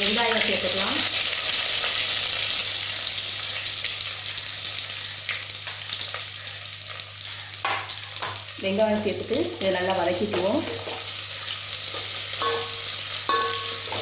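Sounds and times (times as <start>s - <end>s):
onions sizzling in oil: 0.0s - 14.0s
spoon knocking against pan: 12.4s - 14.0s.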